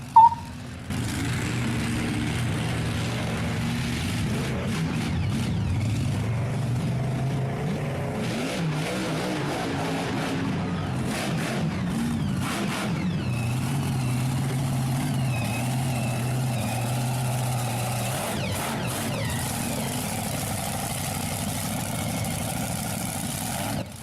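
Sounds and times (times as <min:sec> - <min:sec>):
engine running: 0:00.0 - 0:24.0.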